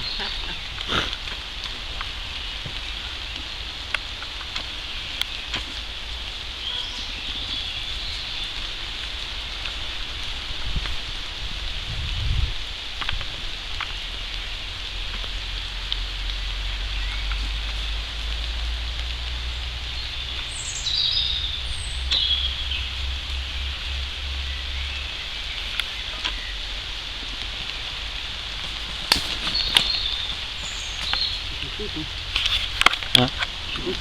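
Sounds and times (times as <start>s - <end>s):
bird chirping: 0.0s - 1.2s, 4.6s - 8.8s, 19.5s - 26.9s, 28.6s - 34.0s
steady hiss: 0.0s - 34.0s.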